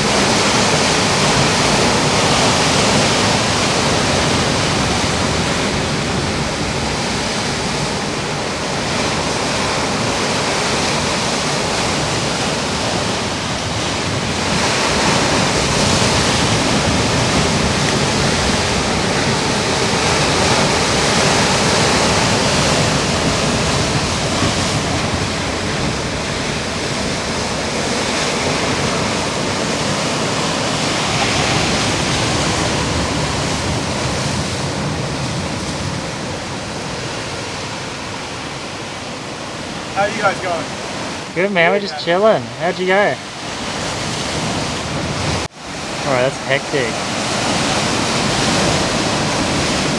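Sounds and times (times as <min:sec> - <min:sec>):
surf breaking on rocky shore: 0:00.0 - 0:49.9.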